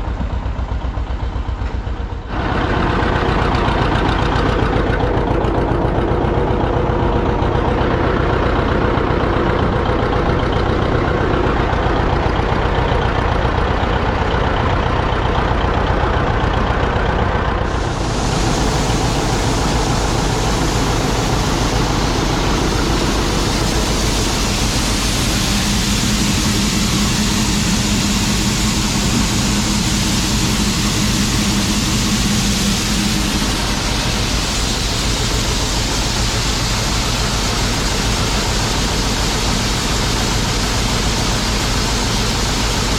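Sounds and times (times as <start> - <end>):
farm machine engine idling: 0.0 - 42.9
low hum: 0.0 - 42.9
steady rushing hiss: 17.6 - 42.9.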